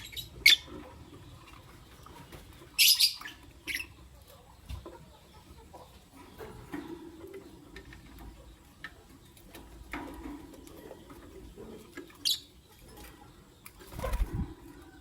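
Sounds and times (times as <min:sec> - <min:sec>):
birds chirping squeaky calls: 0:00.0 - 0:10.0, 0:10.8 - 0:14.6.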